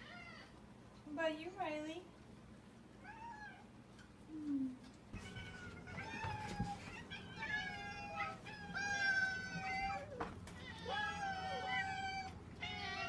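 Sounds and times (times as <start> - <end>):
cat meowing: 5.2 - 13.0.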